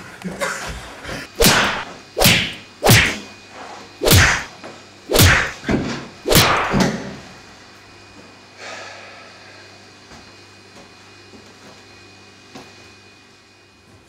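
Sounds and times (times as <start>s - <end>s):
whooshing punch thwacks: 1.4s - 3.2s, 4.0s - 4.5s, 5.1s - 5.6s, 6.3s - 6.8s.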